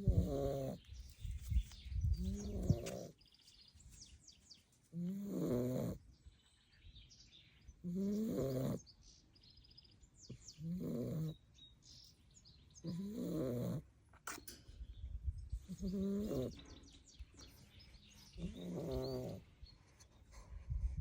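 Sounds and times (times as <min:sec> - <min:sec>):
puppy snoring: 0:00.0 - 0:00.8, 0:02.2 - 0:03.2, 0:05.0 - 0:06.0, 0:07.8 - 0:08.9, 0:10.6 - 0:11.4, 0:12.8 - 0:13.9, 0:15.7 - 0:16.6, 0:18.2 - 0:19.5
puppy breathing quietly: 0:15.7 - 0:21.0.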